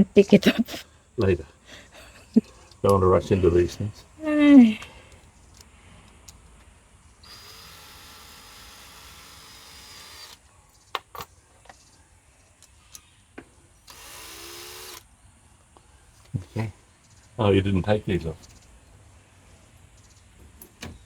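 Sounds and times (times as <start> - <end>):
cordless drill running: 7.2 - 10.4, 13.9 - 15.0.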